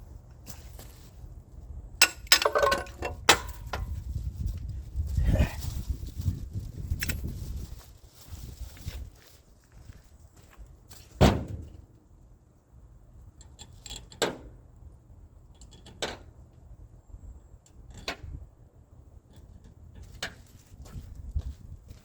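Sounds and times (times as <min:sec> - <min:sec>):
tools knocking and clanking: 0:02.0 - 0:03.9.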